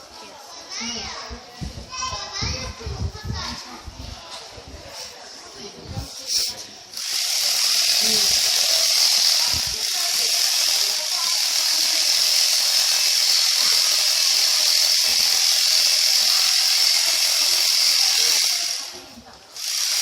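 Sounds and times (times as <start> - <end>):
electric shears buzzing: 6.9 - 20.0.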